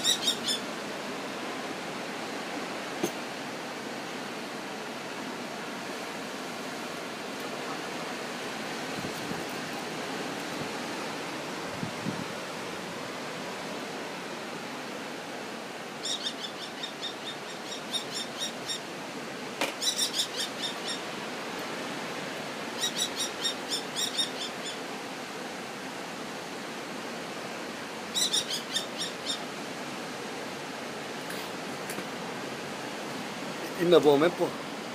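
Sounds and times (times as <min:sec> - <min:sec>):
falcon calling: 0:00.0 - 0:00.7, 0:16.0 - 0:18.9, 0:19.8 - 0:21.1, 0:22.8 - 0:24.8, 0:28.1 - 0:29.5
steady hiss: 0:23.5 - 0:34.9.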